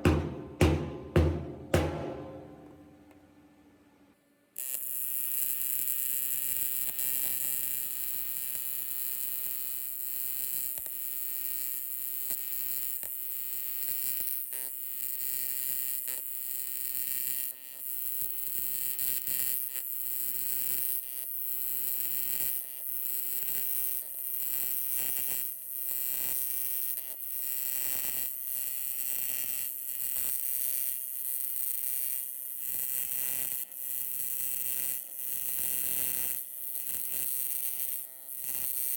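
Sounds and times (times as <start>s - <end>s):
welding arc buzzing: 31.9s - 38.9s.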